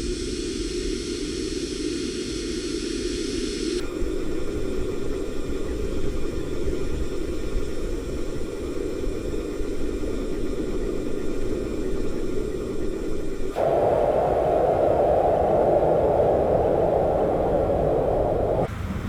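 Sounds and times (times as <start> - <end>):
bright hissing noise: 12.6 - 19.0.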